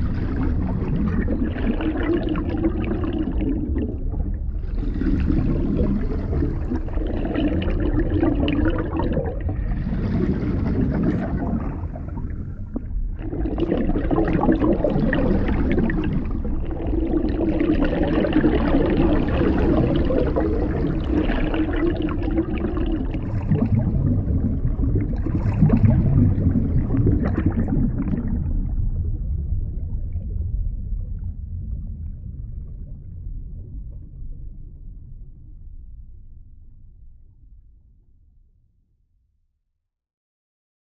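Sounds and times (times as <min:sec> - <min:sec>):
water gurgling and rushing: 0:00.0 - 0:30.6
steady low rumble: 0:00.0 - 0:37.8.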